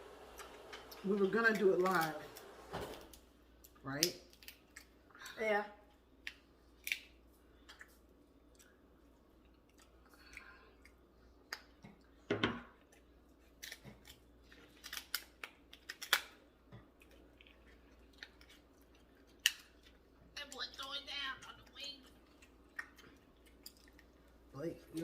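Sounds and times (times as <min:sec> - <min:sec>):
crab shells cracking: 0:03.6 - 0:05.3, 0:06.2 - 0:07.9, 0:12.9 - 0:20.0, 0:22.4 - 0:24.1
chewing: 0:06.2 - 0:20.4, 0:21.4 - 0:25.0.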